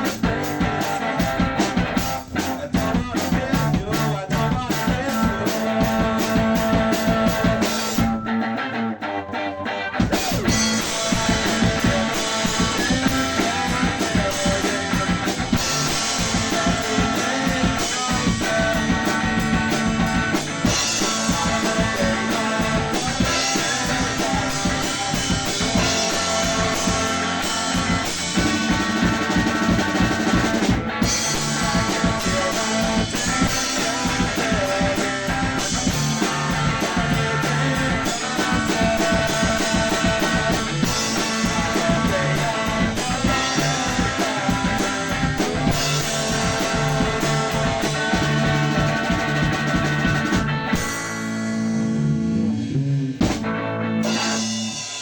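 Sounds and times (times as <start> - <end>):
drum kit: 0.0 - 8.5, 10.0 - 55.0
electric guitars: 0.0 - 55.0.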